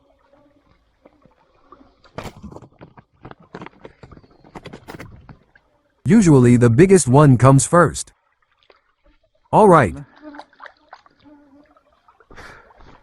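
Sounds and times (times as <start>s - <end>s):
irregular knocks and clatters: 2.2s - 5.5s.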